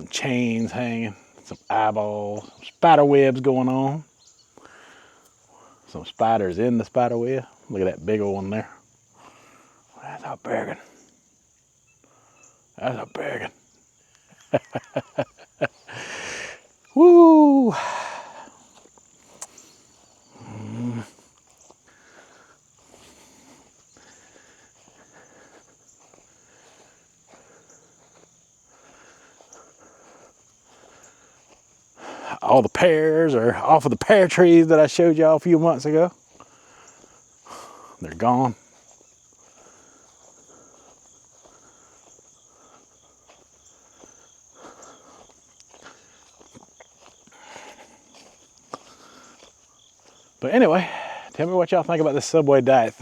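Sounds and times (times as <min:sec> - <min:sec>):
high insect trill: 0:00.0 - 0:53.0
footsteps on ground: 0:14.4 - 0:53.0.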